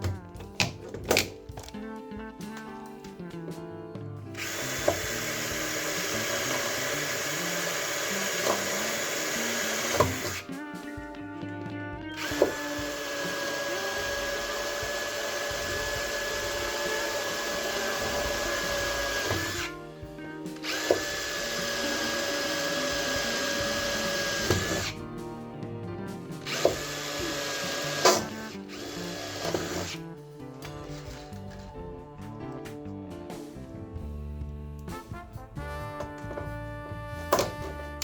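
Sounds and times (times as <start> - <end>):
power tool motor whining: 4.4 - 10.6, 12.1 - 25.3, 26.4 - 31.9.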